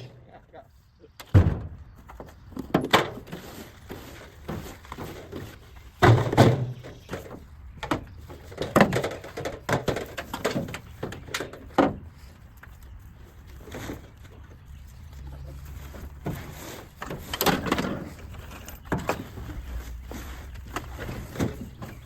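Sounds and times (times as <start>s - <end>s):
junk knocking and rattling: 1.2s - 12.4s, 15.5s - 22.0s
sharp thuds: 1.3s - 3.3s
scraping and rustling: 1.9s - 22.0s.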